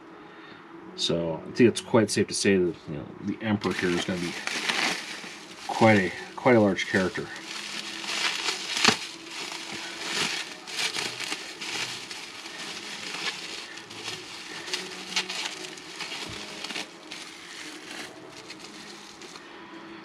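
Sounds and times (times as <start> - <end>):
bubble wrap crinkling: 3.6 - 19.5.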